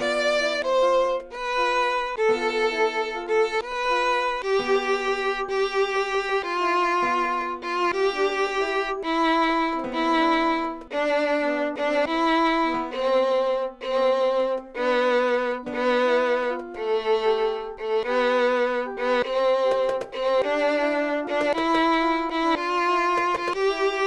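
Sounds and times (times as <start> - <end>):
violin slow melody: 0.0 - 24.0.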